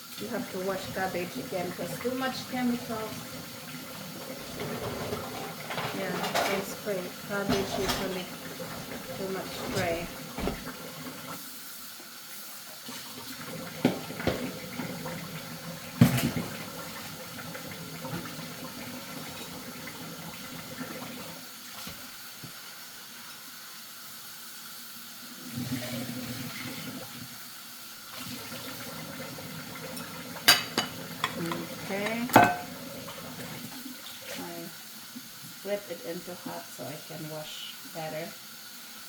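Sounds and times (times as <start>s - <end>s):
kitchen tap running into sink: 0.0s - 39.0s
knocks of cabbage in sink: 9.8s - 10.7s.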